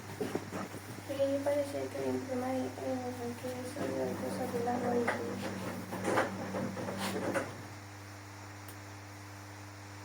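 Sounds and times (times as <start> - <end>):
low electrical hum: 0.0 - 10.0
person speaking: 1.1 - 5.6.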